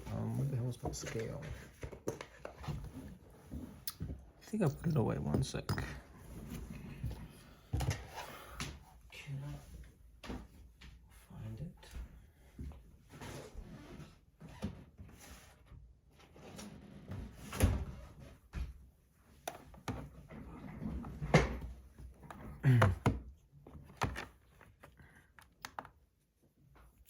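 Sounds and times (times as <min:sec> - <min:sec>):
objects shuffled and knocked: 0:00.0 - 0:08.8, 0:17.1 - 0:27.0.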